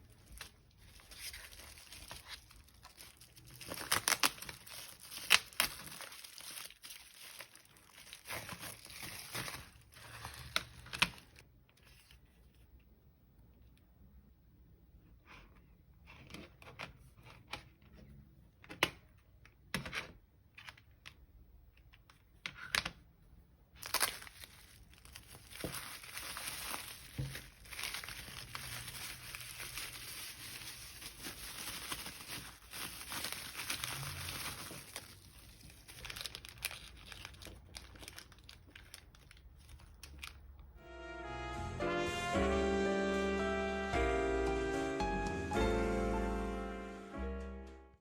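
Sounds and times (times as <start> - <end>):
packaging crinkling and tearing: 0.0 - 12.2, 23.8 - 40.6.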